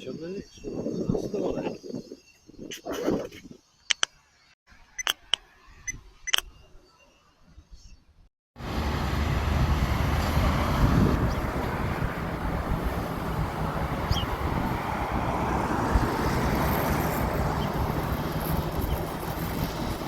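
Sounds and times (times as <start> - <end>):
wind on microphone: 0.0 - 3.6, 8.7 - 20.0
outdoor rumble: 8.6 - 20.0.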